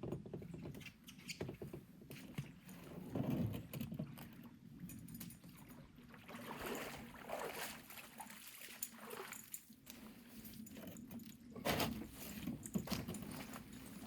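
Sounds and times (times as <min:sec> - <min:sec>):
water lapping around a canoe: 0:05.4 - 0:10.7.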